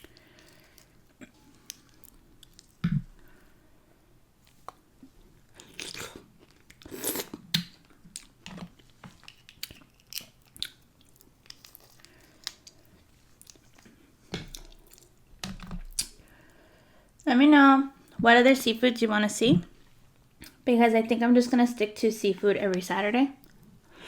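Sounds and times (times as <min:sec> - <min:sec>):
person chewing food: 0:00.0 - 0:03.5, 0:04.4 - 0:15.2.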